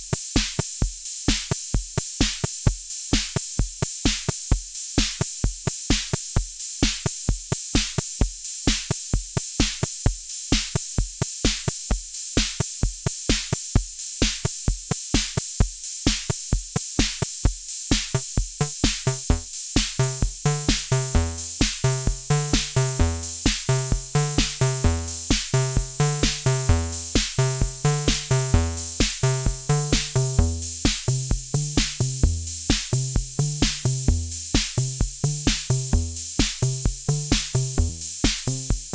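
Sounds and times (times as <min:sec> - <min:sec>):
drum machine beat: 0:00.0 - 0:38.9
sequenced analog bass synth: 0:19.0 - 0:32.7.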